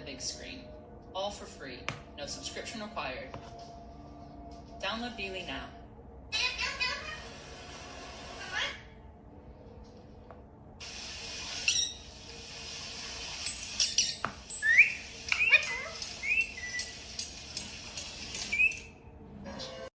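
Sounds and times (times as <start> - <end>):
parrot chirping and whistling: 13.8 - 17.0, 18.4 - 19.0.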